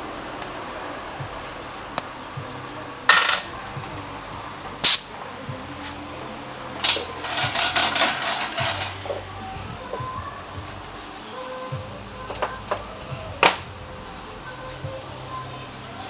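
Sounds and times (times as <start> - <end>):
workshop hum: 0.0 - 16.0
metal tools clinking: 3.1 - 3.5, 6.8 - 9.2.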